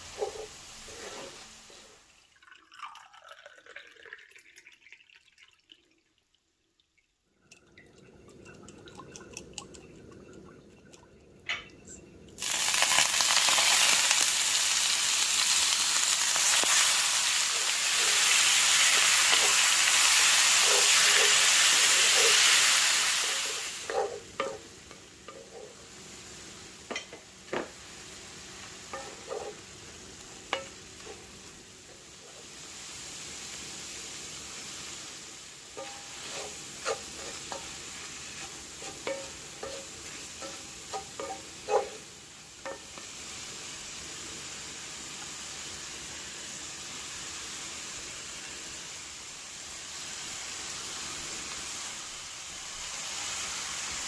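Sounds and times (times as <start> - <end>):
utensil scraping pan: 0.0 - 1.9, 17.6 - 25.8, 28.9 - 29.7, 35.8 - 42.9
food sizzling in frying pan: 0.0 - 2.9, 12.3 - 54.0.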